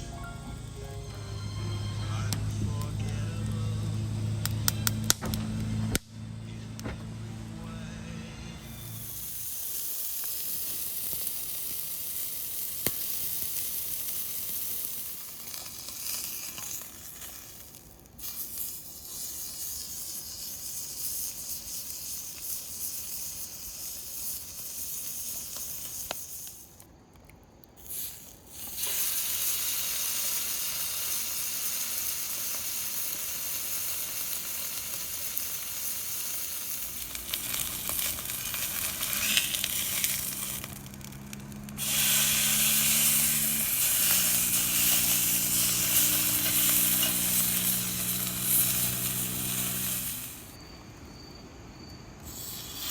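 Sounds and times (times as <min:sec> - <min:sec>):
food sizzling: 0:08.6 - 0:26.8, 0:27.8 - 0:50.6, 0:52.2 - 0:52.9.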